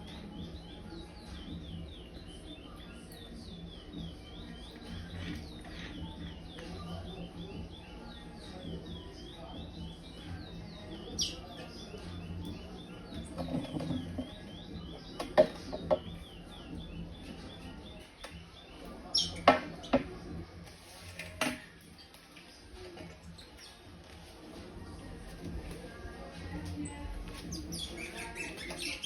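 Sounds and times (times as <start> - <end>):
finch chirping: 0.1 - 20.0, 27.4 - 29.0.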